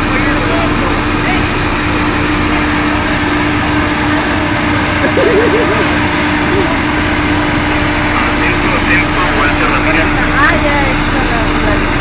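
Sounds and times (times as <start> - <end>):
drilling rig engine din: 4.9 - 10.4
brief wavering tone: 5.0 - 6.7.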